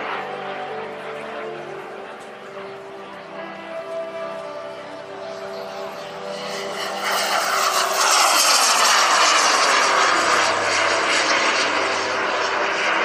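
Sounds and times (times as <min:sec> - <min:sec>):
model jet turbines passing: 0:05.0 - 0:13.0.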